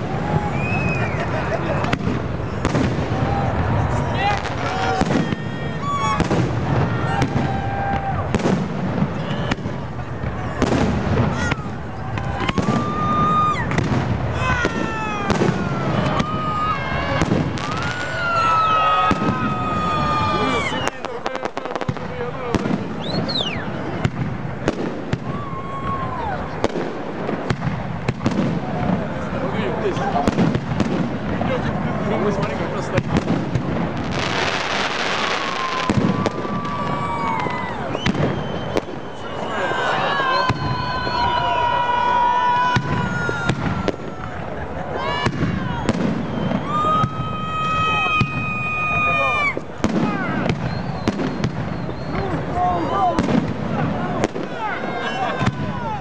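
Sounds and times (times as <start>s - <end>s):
fireworks bangs and crackling: 0.0s - 56.0s
whistling rockets: 0.0s - 56.0s
long steady whistle: 0.3s - 1.3s, 23.0s - 24.1s, 37.4s - 41.8s, 50.3s - 53.2s.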